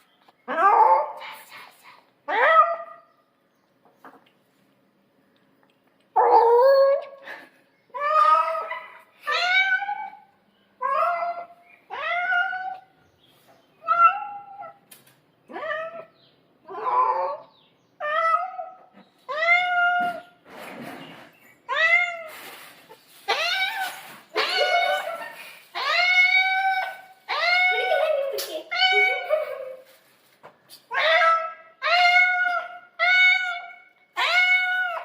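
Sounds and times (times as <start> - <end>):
cat meowing loudly: 23.3 - 24.9, 25.8 - 27.8, 30.9 - 35.0.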